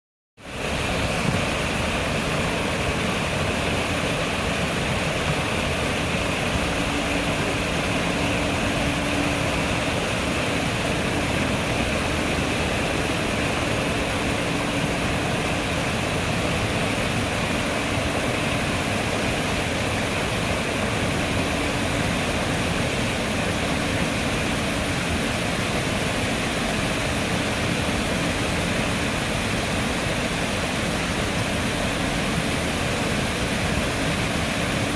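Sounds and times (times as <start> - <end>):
waterfall pouring and splashing: 0.4 - 34.9.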